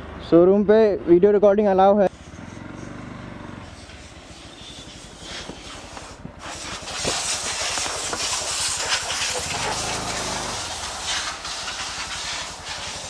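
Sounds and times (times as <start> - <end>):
motorcycle engine running: 2.1 - 13.0
broad hiss: 3.6 - 13.0.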